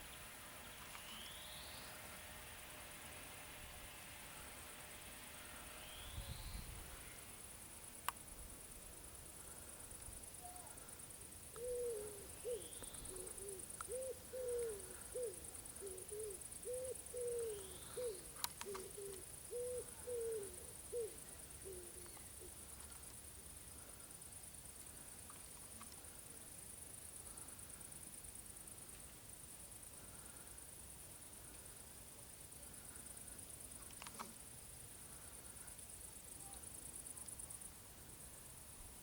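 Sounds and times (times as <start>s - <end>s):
crickets chirring: 0.0s - 39.0s
pigeon cooing: 11.6s - 22.1s.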